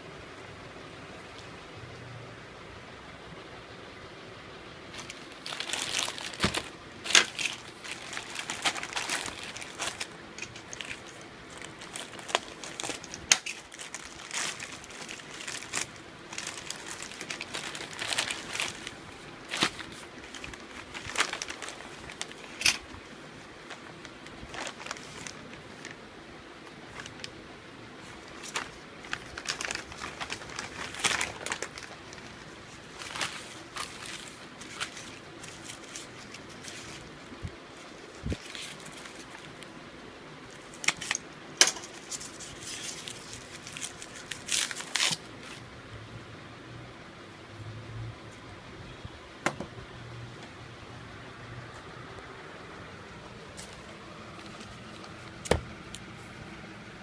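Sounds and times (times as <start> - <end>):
plastic wrap crinkling: 4.9 - 27.4, 28.0 - 39.7, 40.5 - 45.7, 53.1 - 56.4.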